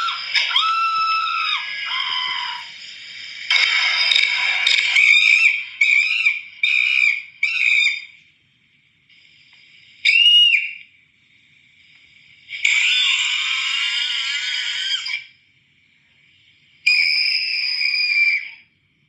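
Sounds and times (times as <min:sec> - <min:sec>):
cartoon screams: 0:00.0 - 0:02.7, 0:03.5 - 0:08.1, 0:12.6 - 0:15.3, 0:16.9 - 0:18.6
whistle-like cry: 0:00.0 - 0:02.9, 0:03.5 - 0:08.2, 0:09.8 - 0:10.9, 0:12.5 - 0:15.4, 0:16.8 - 0:18.7.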